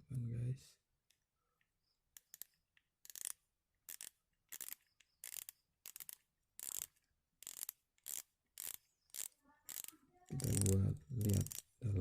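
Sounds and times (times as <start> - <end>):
fishing reel whirring: 3.0 - 10.8.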